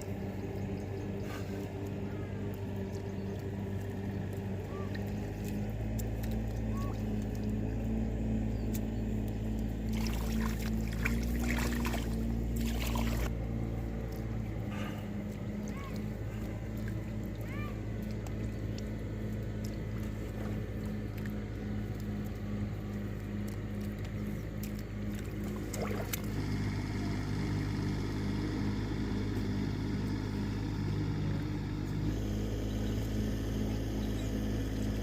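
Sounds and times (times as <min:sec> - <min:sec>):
small engine running: 0:00.0 - 0:35.0
rushing splashing water: 0:09.8 - 0:13.3, 0:25.1 - 0:26.5.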